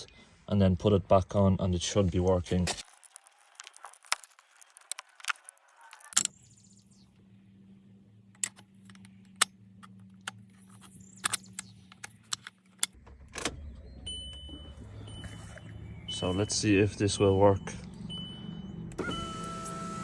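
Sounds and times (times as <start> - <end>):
sharp clicks: 8.4 - 13.6.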